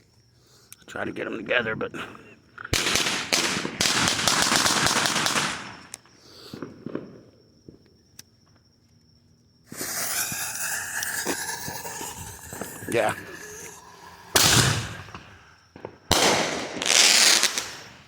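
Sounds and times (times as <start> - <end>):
firework bang: 9.7 - 18.0.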